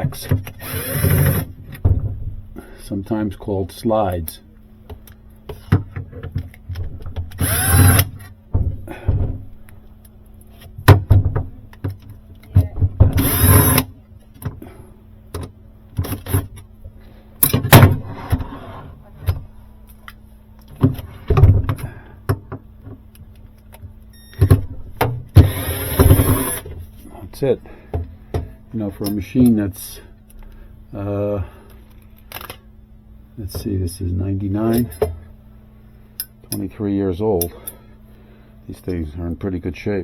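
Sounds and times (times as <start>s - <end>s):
cordless screw gun whirring: 0.5s - 1.5s, 7.3s - 8.2s, 13.1s - 13.9s, 25.4s - 26.7s.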